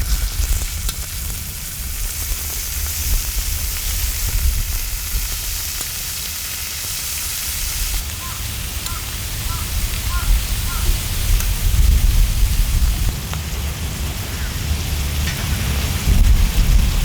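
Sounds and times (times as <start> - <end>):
meat sizzling on griddle: 0.0 - 17.0
low rumble: 9.7 - 17.0.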